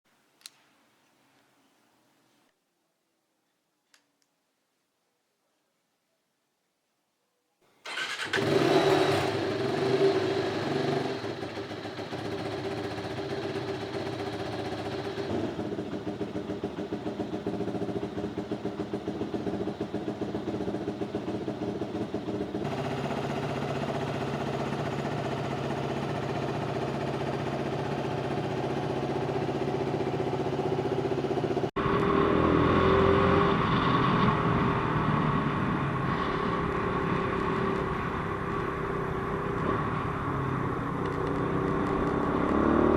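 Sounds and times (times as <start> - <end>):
motorcycle engine revving blips: 7.8 - 32.9
motorcycle engine idling: 7.9 - 31.8.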